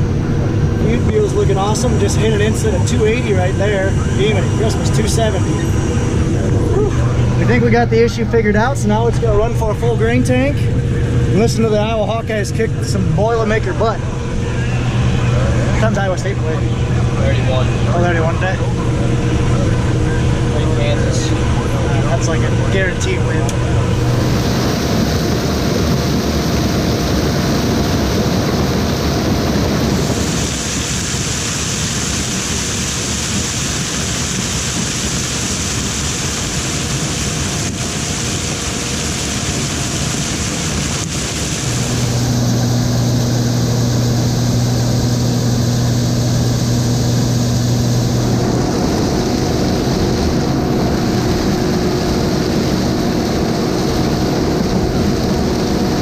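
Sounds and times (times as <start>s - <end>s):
combine harvester drone: 0.0s - 56.0s.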